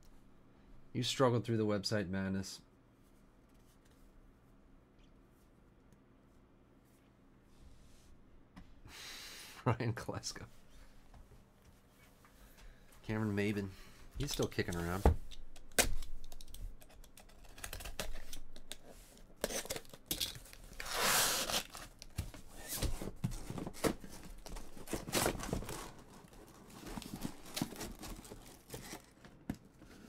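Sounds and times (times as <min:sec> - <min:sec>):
packaging tearing: 0:15.9 - 0:18.7, 0:19.4 - 0:22.7, 0:24.3 - 0:29.2.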